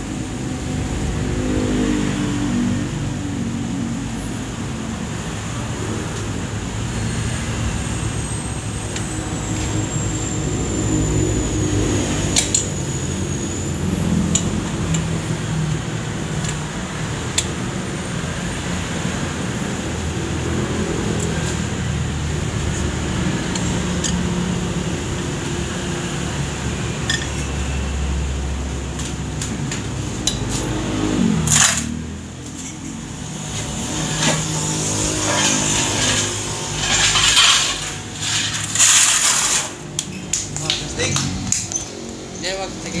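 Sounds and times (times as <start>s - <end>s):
engine running: 0.0s - 43.0s
metal tools clinking: 27.0s - 27.6s, 35.0s - 40.4s
loud metal clank: 34.1s - 39.8s.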